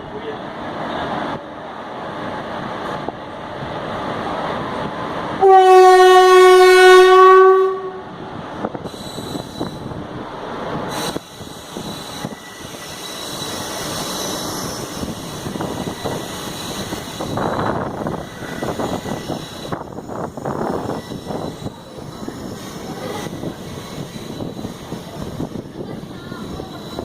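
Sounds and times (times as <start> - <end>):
train horn blast: 5.4 - 8.1
train wheels clattering on rails: 10.7 - 27.0.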